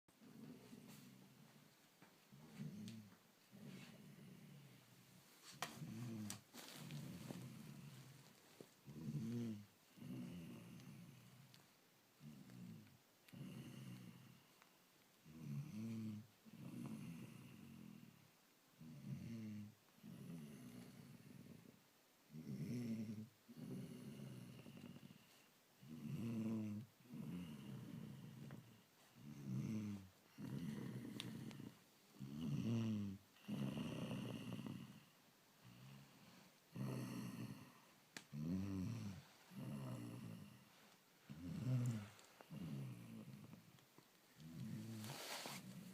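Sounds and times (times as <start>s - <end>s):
lion snoring: 8.8s - 11.3s, 18.8s - 36.1s, 36.7s - 43.8s, 44.4s - 45.9s.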